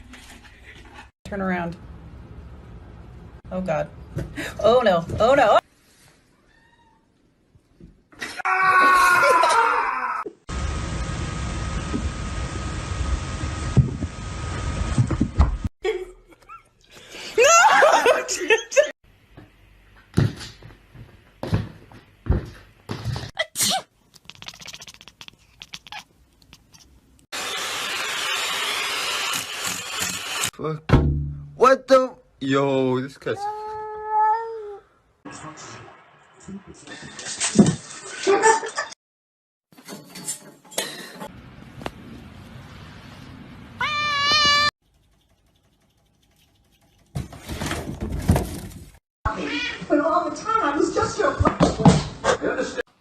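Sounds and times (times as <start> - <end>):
cat meowing: 6.4 - 7.1, 24.3 - 26.9, 43.8 - 44.7
cat sneezing: 23.4 - 26.9.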